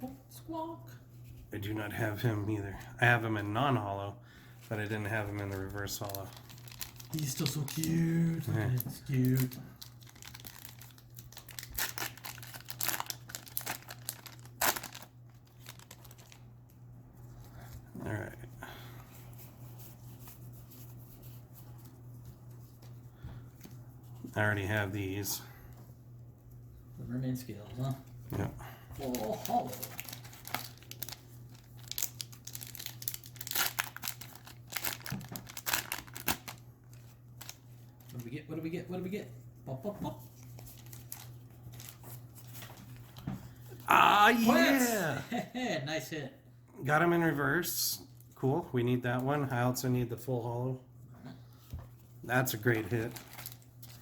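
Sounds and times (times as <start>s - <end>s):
packaging crinkling: 5.1s - 16.5s, 29.0s - 38.3s, 40.4s - 43.2s, 52.7s - 54.0s.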